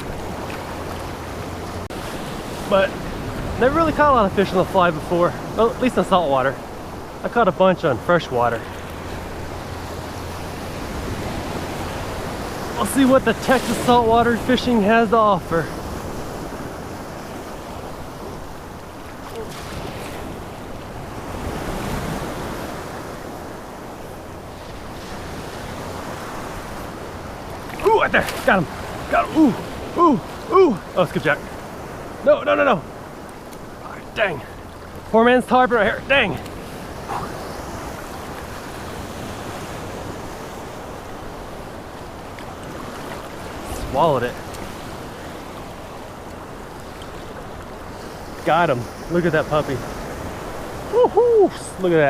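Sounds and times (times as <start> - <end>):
wind buffeting microphone: 0.0 - 7.3
surf breaking: 0.0 - 52.0.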